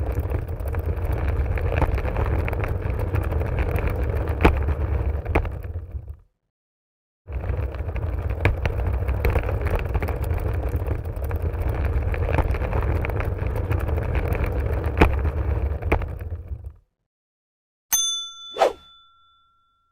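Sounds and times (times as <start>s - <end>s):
trolley wheels rolling: 0.0s - 6.2s, 7.3s - 16.8s.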